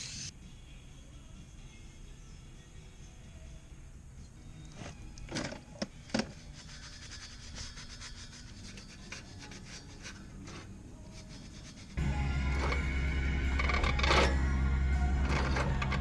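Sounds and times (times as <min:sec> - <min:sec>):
scraping on metal: 0:06.2 - 0:12.0, 0:13.5 - 0:14.4.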